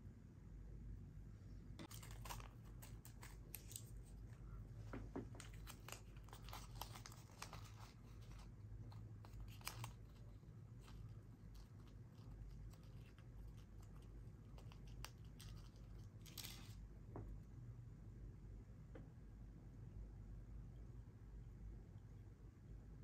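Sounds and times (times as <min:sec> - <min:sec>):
plastic packaging crinkling: 0:01.8 - 0:16.8.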